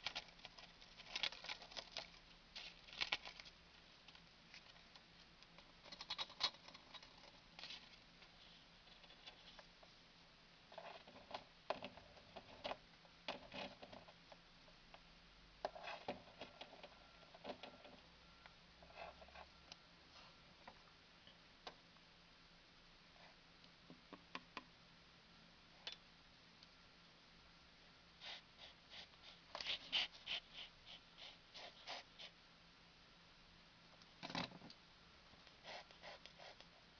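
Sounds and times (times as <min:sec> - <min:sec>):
parrot shredding paper: 0:00.0 - 0:03.5, 0:28.2 - 0:32.2.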